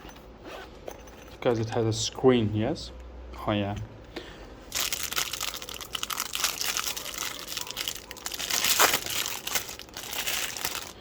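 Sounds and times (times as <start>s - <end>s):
plastic wrapping crinkling: 4.7s - 11.0s.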